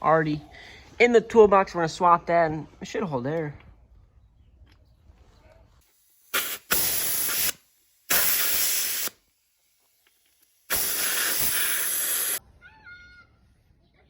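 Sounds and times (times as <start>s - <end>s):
compressed air hissing: 5.8s - 12.4s.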